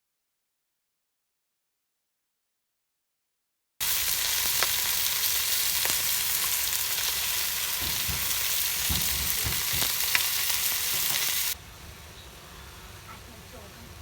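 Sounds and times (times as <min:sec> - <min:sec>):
food sizzling in a pan: 0:03.8 - 0:11.6.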